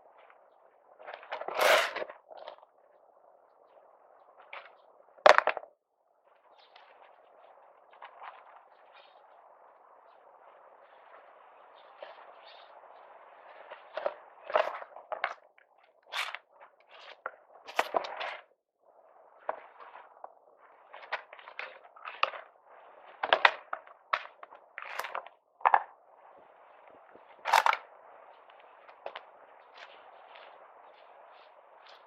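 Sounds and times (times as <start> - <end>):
handling clicks and scrapes: 1.0 - 2.6, 16.0 - 18.5, 23.1 - 25.9, 27.4 - 27.9.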